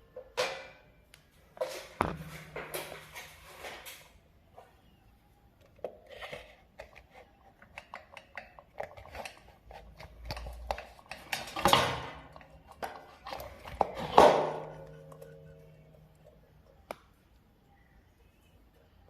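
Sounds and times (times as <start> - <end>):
hard objects clicking and clattering: 5.7 - 16.9.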